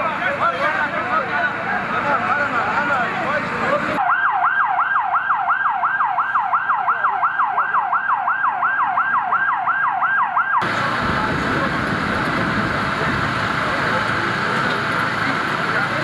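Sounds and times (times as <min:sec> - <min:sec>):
siren yelping: 0:04.0 - 0:10.7
loud rush of noise: 0:10.6 - 0:16.0.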